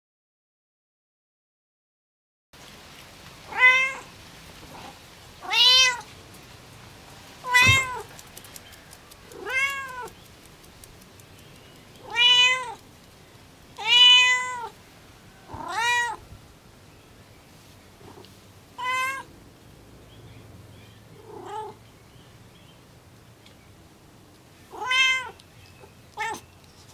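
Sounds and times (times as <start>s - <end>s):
cat meowing: 3.5s - 4.1s, 5.4s - 6.1s, 7.4s - 8.1s, 9.3s - 10.2s, 12.0s - 12.8s, 13.8s - 14.8s, 15.5s - 16.2s, 18.8s - 19.3s, 21.2s - 21.8s, 24.7s - 25.4s, 26.2s - 26.4s
short knock: 7.6s - 8.0s.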